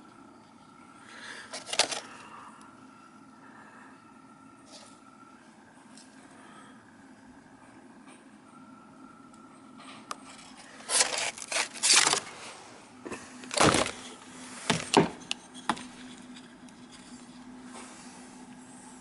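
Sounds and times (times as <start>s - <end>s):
parts clattering and scraping: 1.4s - 2.2s, 9.8s - 18.5s.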